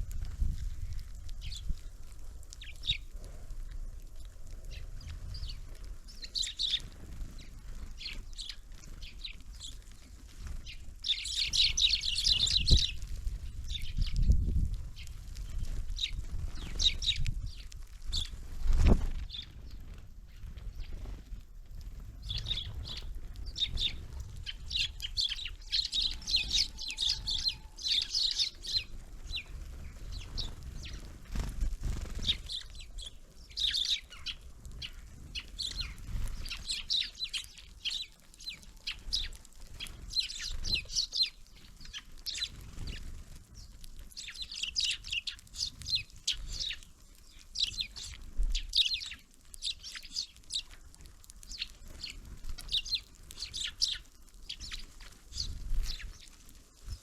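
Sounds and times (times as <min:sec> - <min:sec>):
small songbirds chirping: 0:00.0 - 0:57.0.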